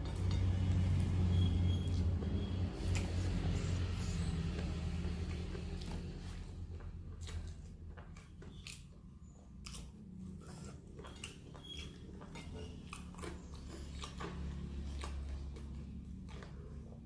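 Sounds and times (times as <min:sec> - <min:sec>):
wet chewing: 0:00.0 - 0:17.0
crunching fried chicken: 0:02.0 - 0:17.0.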